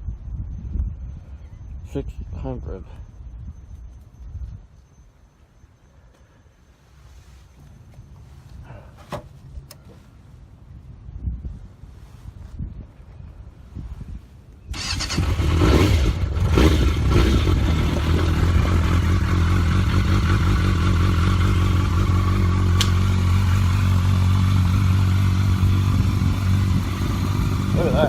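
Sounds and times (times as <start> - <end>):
motorcycle engine idling: 14.8 - 28.0
sharp click: 22.8 - 23.0.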